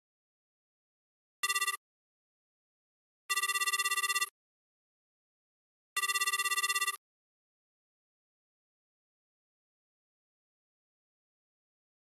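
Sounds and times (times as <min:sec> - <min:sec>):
electronic telephone ringing: 0:01.4 - 0:01.8, 0:03.3 - 0:04.3, 0:06.0 - 0:07.0.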